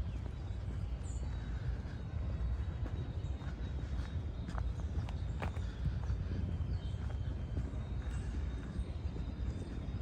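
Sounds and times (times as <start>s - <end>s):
city ambience rumble: 0.0s - 10.0s.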